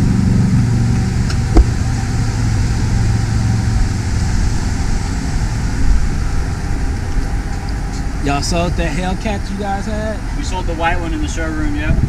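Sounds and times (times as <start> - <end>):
vehicle engine idling: 0.0 - 11.8
sharp thump: 1.4 - 1.9.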